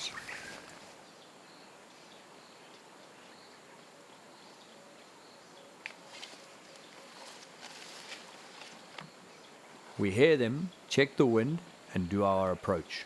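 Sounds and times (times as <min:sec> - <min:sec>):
faint high chirp: 0:00.0 - 0:01.7.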